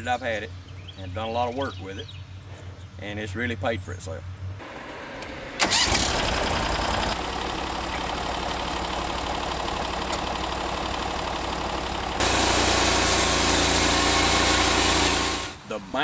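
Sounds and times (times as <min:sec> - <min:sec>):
sawmill engine running: 0:04.6 - 0:16.0.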